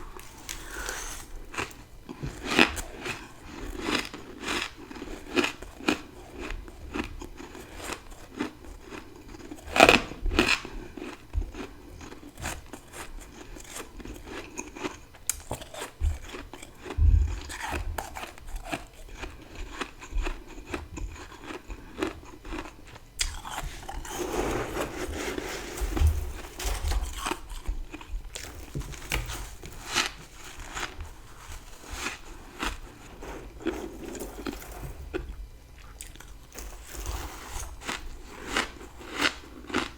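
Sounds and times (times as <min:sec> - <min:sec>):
chewing crunches: 0:00.1 - 0:39.9
frost crunching: 0:23.2 - 0:39.1.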